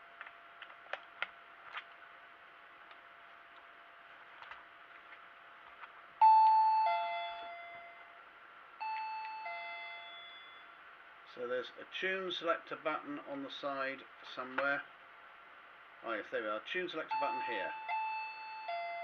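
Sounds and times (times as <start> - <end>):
doorbell ding-dong chime: 6.2 - 8.2, 8.8 - 10.8, 17.1 - 19.0.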